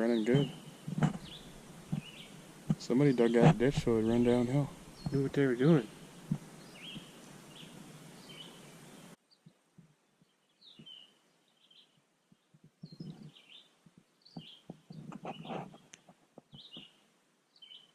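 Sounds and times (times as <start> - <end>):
steady hiss: 0.0 - 9.2
birds chirping: 0.0 - 9.6, 10.2 - 17.9
soft low knocks and rustles: 0.3 - 7.9.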